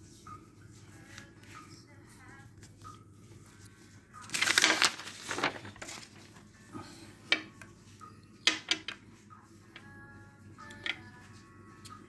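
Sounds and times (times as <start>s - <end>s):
rustling handling noise: 2.6s - 6.6s.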